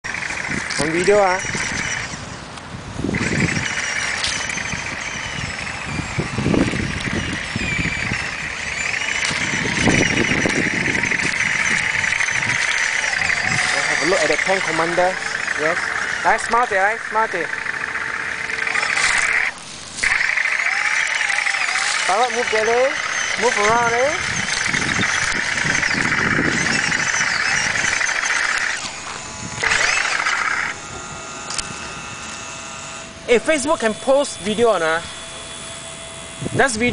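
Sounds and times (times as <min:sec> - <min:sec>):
model tank motor whine: 0:00.1 - 0:02.4, 0:03.0 - 0:36.9.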